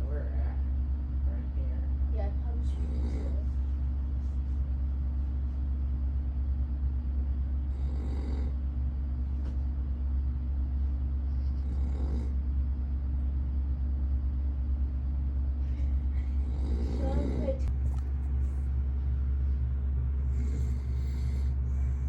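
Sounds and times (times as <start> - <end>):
loud low hum: 0.0 - 22.0
man snoring: 2.7 - 3.4, 7.7 - 8.6, 11.6 - 12.4, 16.4 - 17.5, 20.2 - 21.6.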